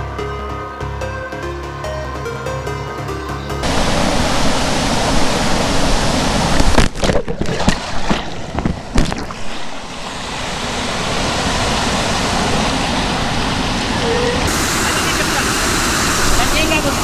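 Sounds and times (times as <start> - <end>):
wind noise on microphone: 3.6 - 17.0.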